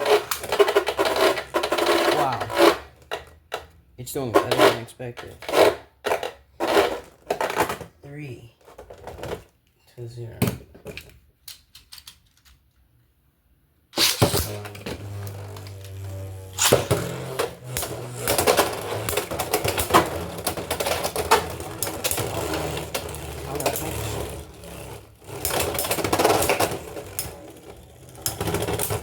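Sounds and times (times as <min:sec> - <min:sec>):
spinning tops whirring: 0:14.0 - 0:29.0.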